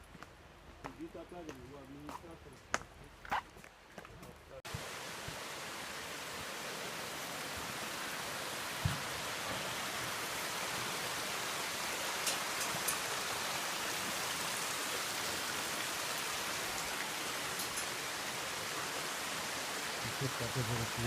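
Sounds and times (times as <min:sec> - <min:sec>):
waterfall rushing: 0:04.7 - 0:21.0.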